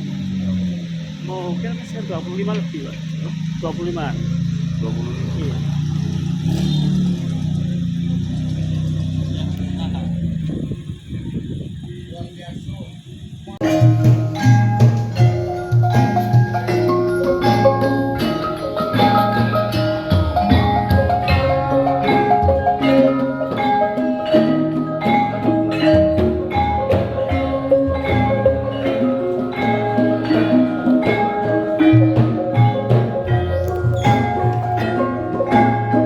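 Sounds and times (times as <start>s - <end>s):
mallet percussion melody: 0.0s - 10.7s, 13.6s - 36.0s
steady beat: 13.6s - 23.6s, 26.1s - 36.0s.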